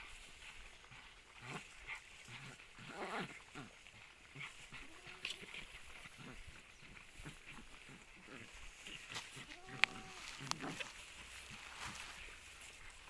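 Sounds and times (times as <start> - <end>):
puppies yelping and whining: 3.4 - 12.4.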